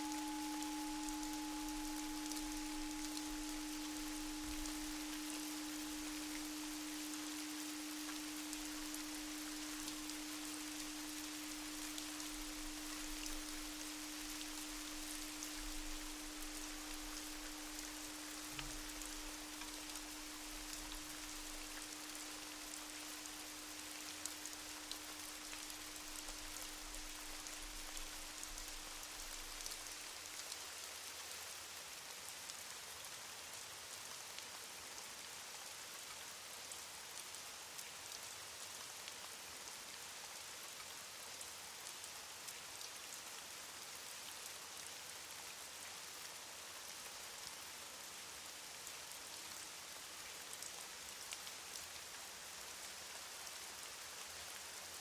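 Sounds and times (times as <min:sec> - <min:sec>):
low steady hum: 0:00.0 - 0:29.7
small drop ticks: 0:00.0 - 0:29.8
rain falling: 0:00.0 - 0:55.0.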